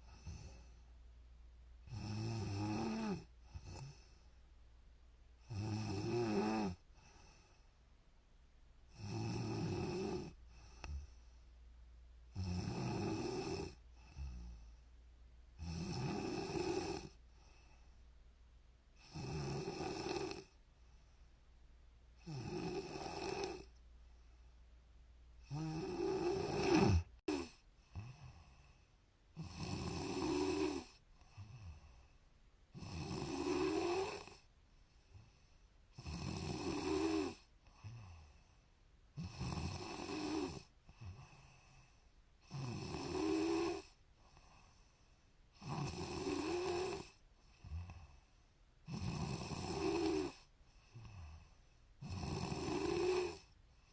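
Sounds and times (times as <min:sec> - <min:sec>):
woman snoring: 0:00.0 - 0:00.8, 0:01.9 - 0:04.3, 0:05.4 - 0:07.6, 0:08.9 - 0:11.2, 0:12.3 - 0:14.7, 0:15.6 - 0:17.6, 0:19.0 - 0:20.6, 0:22.2 - 0:23.8, 0:25.4 - 0:32.1, 0:32.7 - 0:34.5, 0:35.1 - 0:38.5, 0:39.2 - 0:53.9
quiet breathing: 0:00.0 - 0:53.9.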